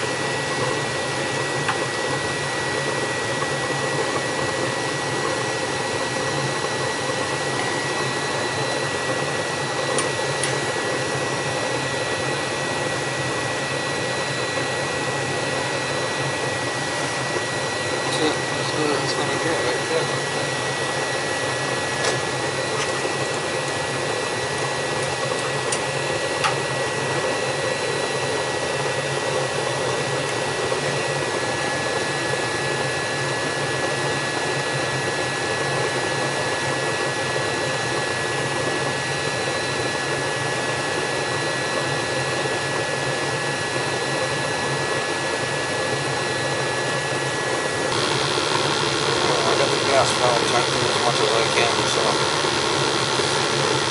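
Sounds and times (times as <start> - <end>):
furnace fans and burners rushing: 0.0 - 53.9
thin high whine: 13.6 - 33.2, 46.2 - 53.9.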